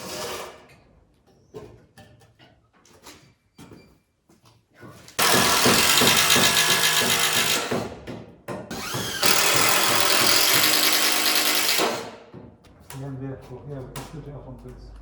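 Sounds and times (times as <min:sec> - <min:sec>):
power drill driving screws: 0:05.2 - 0:07.8, 0:08.7 - 0:12.1.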